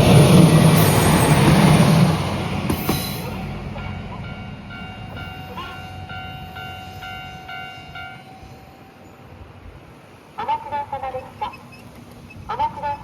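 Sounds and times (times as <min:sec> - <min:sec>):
diesel railcar rumbling: 0:00.0 - 0:13.0
level crossing warning bell: 0:00.8 - 0:09.3.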